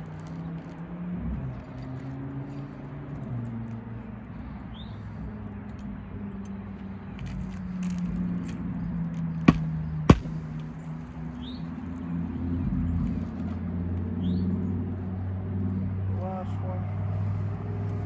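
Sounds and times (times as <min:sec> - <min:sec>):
hatchet striking a nail: 0:09.5 - 0:10.9.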